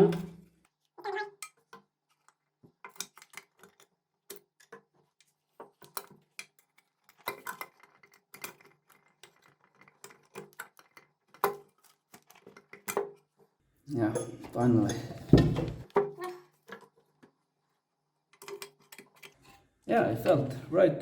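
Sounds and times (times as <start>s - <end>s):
small metallic clicks and knocks: 1.4s - 13.4s, 14.1s - 17.4s, 18.3s - 19.6s.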